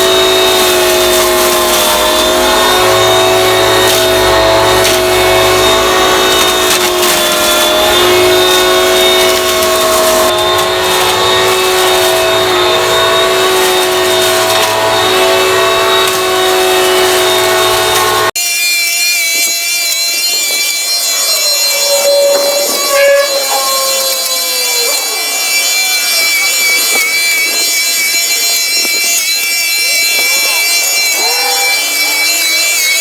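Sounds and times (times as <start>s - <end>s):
fan suction rush: 0.0s - 18.3s
electric hedge trimmer whining: 0.0s - 18.4s
thin high-pitched whine: 0.0s - 33.0s.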